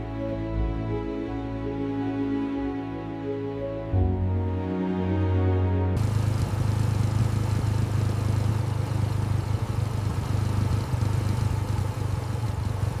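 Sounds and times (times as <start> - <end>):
motorcycle engine idling: 6.0 - 13.0.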